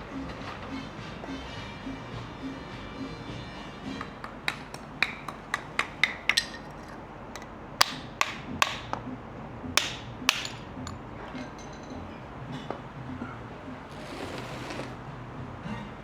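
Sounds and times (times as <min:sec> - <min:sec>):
hammer tapping metal: 0:04.0 - 0:09.0, 0:09.8 - 0:11.0.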